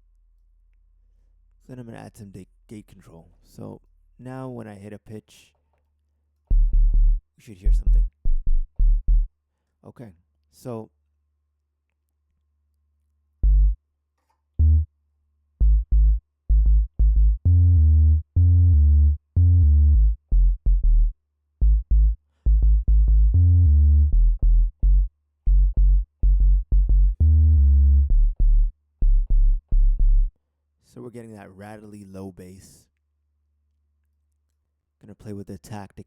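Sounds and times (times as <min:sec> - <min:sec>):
distorted synth bass notes: 0:06.5 - 0:09.3, 0:15.6 - 0:30.3.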